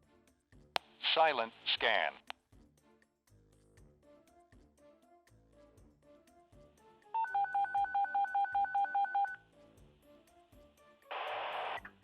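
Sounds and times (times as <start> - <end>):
radio static burst: 11.1 - 11.8.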